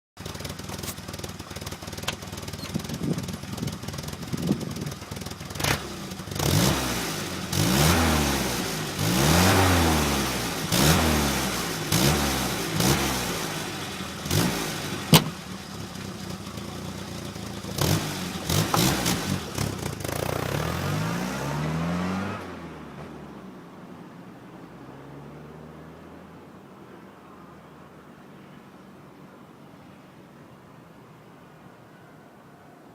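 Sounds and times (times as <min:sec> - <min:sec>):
exhaust crack: 0:00.2 - 0:23.2
vehicle engine idling and revving: 0:00.2 - 0:28.6.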